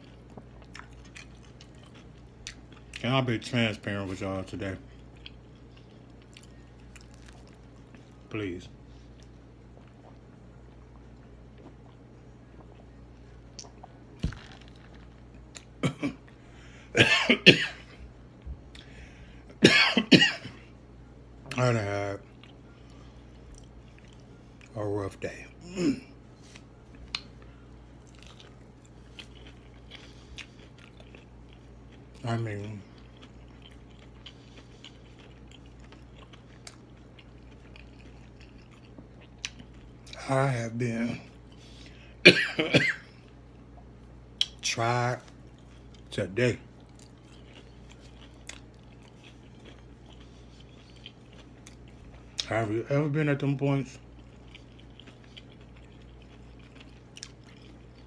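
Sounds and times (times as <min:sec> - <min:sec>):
person chewing food: 0:00.0 - 0:03.0, 0:04.8 - 0:08.2, 0:09.0 - 0:16.8, 0:22.2 - 0:24.7, 0:26.4 - 0:40.2, 0:45.2 - 0:46.1, 0:46.7 - 0:52.5, 0:54.0 - 0:58.0
low steady hum: 0:00.0 - 0:58.0
man coughing: 0:15.8 - 0:16.3, 0:16.9 - 0:18.0, 0:19.6 - 0:20.7, 0:25.6 - 0:26.2, 0:42.2 - 0:43.2.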